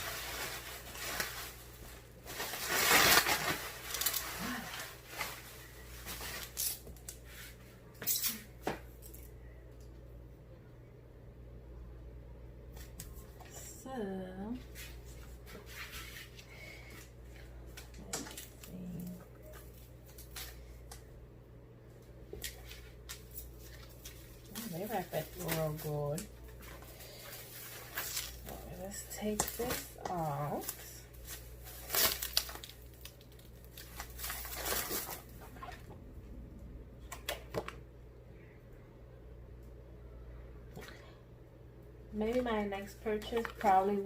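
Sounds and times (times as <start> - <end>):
plastic wrap crackling: 0.0 - 7.2, 22.4 - 36.0, 42.2 - 44.0
steady low hum: 0.0 - 44.0.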